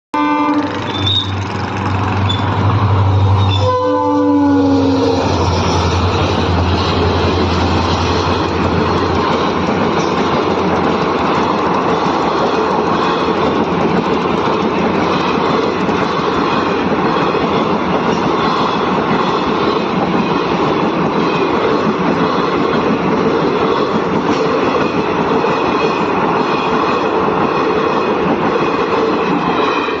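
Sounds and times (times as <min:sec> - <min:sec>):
train wheels on rails: 0:00.4 - 0:30.0.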